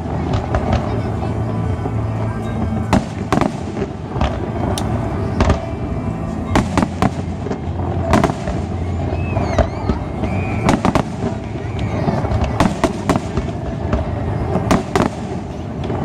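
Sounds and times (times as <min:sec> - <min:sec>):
fireworks bangs and crackles: 0:00.0 - 0:16.0
fireworks whistling: 0:00.0 - 0:16.0.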